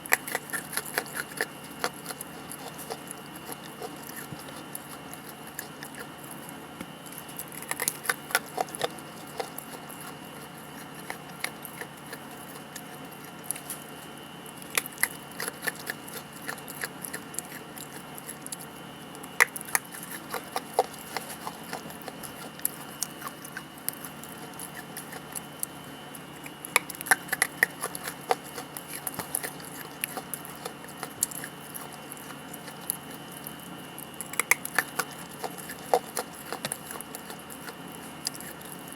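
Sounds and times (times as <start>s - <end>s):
chewing crunchy dried clay: 0.0s - 38.9s.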